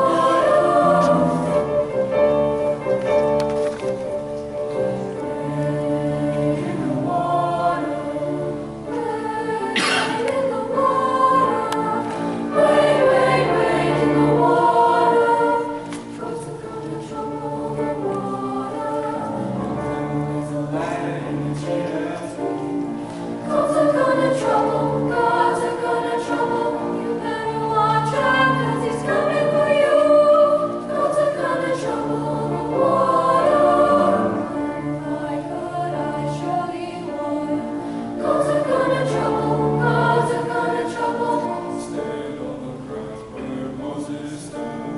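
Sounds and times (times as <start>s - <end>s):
choir singing in parts: 0.0s - 44.9s.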